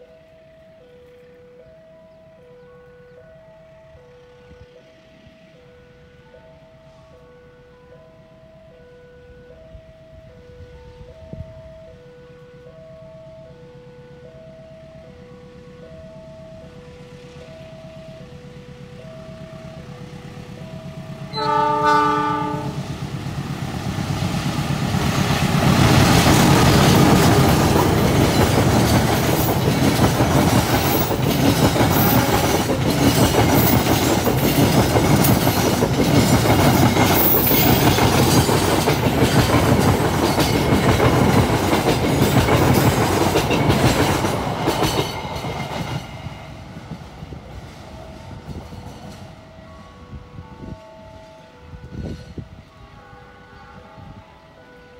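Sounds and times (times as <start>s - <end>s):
train rumbling past: 0.0s - 54.9s
train horn blast: 21.2s - 23.2s, 51.6s - 54.9s
wheels clattering over rail joints: 23.0s - 49.5s.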